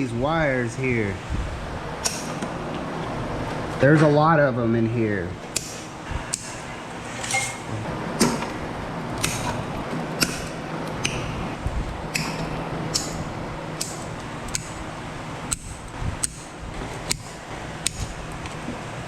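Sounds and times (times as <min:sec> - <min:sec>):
low steady hum: 0:00.0 - 0:19.0
wire cutters snipping: 0:02.0 - 0:02.5, 0:05.5 - 0:08.6, 0:09.2 - 0:09.6, 0:10.2 - 0:11.4, 0:12.1 - 0:18.6.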